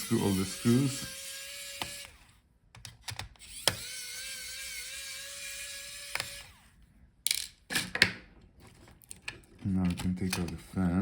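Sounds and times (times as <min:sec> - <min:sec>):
electric screwdriver whining: 0:00.0 - 0:02.4, 0:03.3 - 0:06.7.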